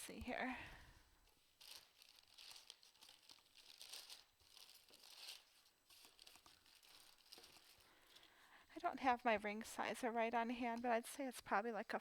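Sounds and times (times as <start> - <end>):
faint rustling and crinkling: 0.0 - 12.0.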